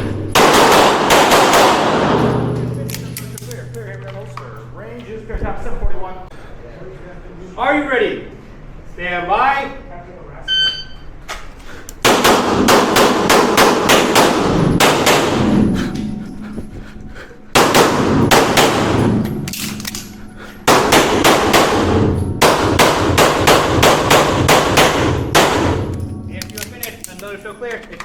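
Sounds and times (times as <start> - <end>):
pistol shots echoing indoors: 0.0 - 4.4, 12.0 - 16.2, 17.5 - 27.3.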